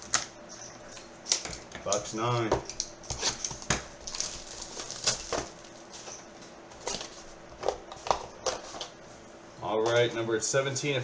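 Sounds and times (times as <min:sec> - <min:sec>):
wrapper crinkling: 0:03.1 - 0:08.8.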